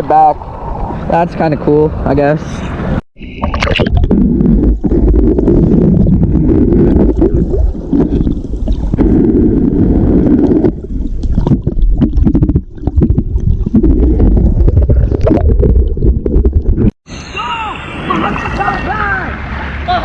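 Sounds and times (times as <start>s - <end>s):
muffled water sloshing and bubbling: 2.7s - 17.0s.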